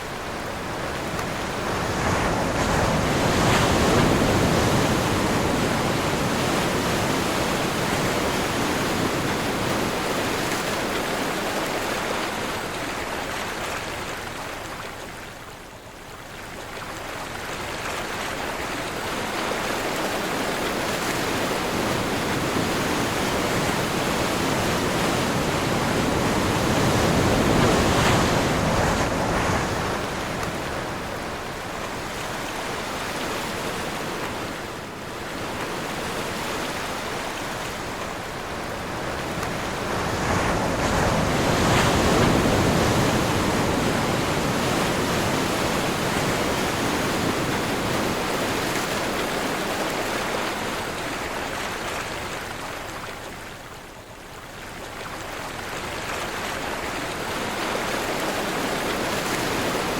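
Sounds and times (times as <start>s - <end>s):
ocean waves breaking: 0.0s - 14.8s, 17.0s - 53.5s, 54.4s - 59.9s
wind blowing: 21.2s - 49.9s.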